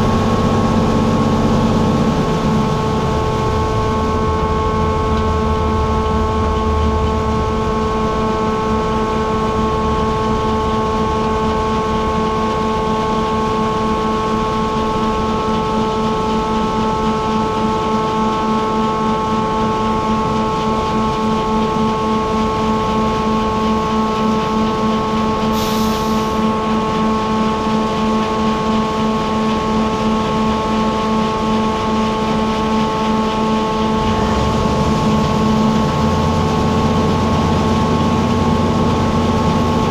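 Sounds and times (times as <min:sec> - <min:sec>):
heavy machinery droning: 0:00.0 - 0:39.9
short hiss: 0:25.6 - 0:26.4.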